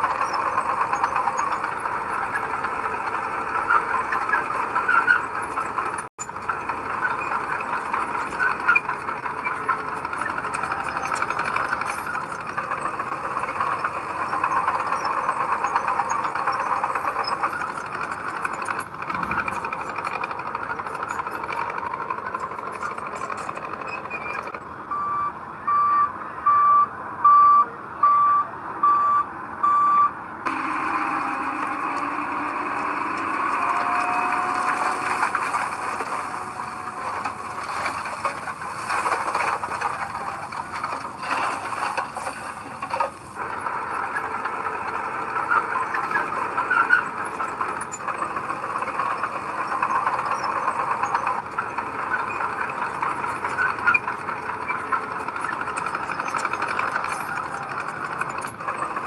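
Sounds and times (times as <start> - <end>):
diesel engine running: 0.0 - 59.0
reversing alarm beeping: 22.9 - 32.4.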